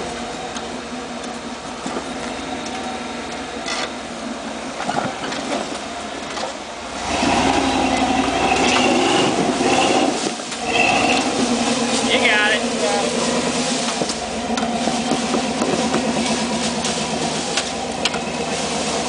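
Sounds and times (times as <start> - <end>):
off-road truck engine: 0.0 - 19.0.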